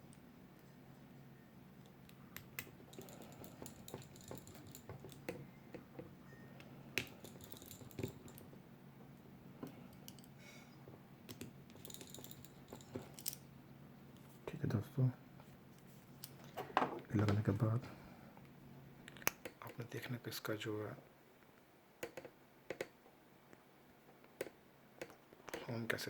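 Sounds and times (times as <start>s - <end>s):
low steady hum: 0.0s - 26.0s
small tools and metal parts clicking: 1.8s - 5.4s, 7.0s - 8.5s, 9.6s - 10.4s, 11.3s - 13.5s.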